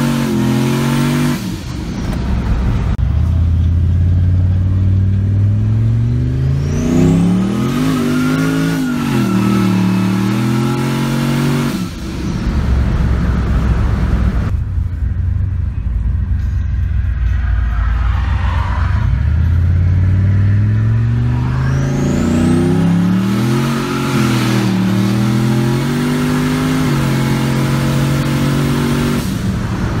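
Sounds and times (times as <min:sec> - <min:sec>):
pickup truck engine revving: 0:04.0 - 0:14.5, 0:19.0 - 0:30.0.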